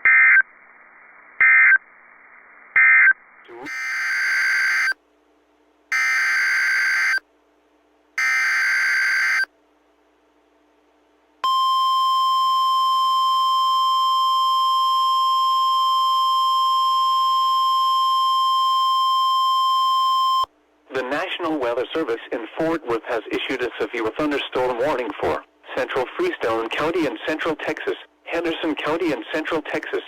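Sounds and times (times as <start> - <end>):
steady warning alarm tone: 3.6 - 5.0, 5.9 - 7.2, 8.2 - 9.5.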